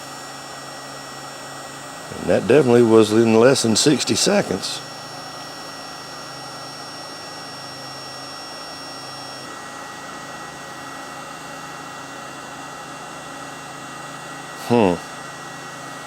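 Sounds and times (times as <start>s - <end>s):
faint high whine: 2.0s - 5.7s
fan blowing hiss with low hum: 2.1s - 5.0s.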